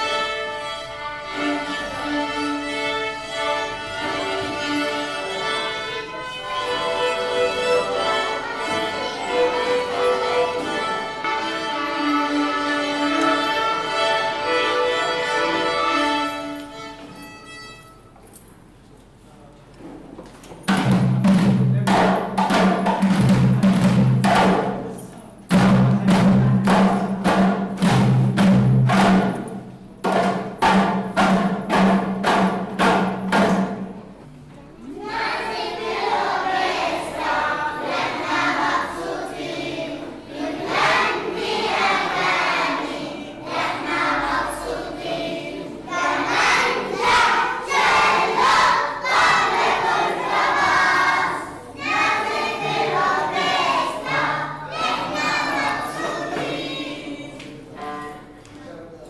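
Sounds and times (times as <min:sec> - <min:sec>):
children's choir singing: 0:00.0 - 0:17.2, 0:20.7 - 0:59.0
drumming: 0:20.6 - 0:34.1.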